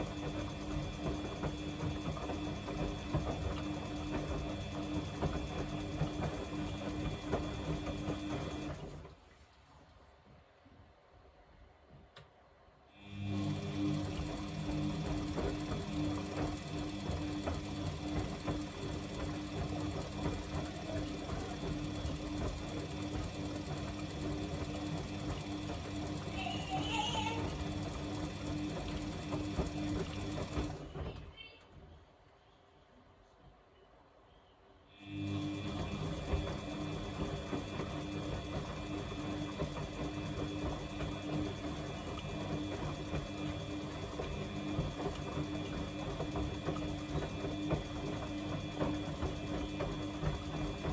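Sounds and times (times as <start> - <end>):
washing machine motor hum: 0.0 - 9.3, 13.0 - 31.3, 35.0 - 50.9.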